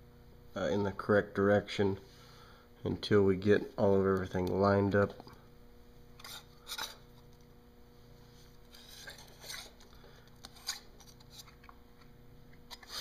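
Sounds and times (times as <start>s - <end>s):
pump housing scraping and rubbing: 6.2s - 7.0s, 8.7s - 9.8s, 10.4s - 11.7s, 12.7s - 13.0s.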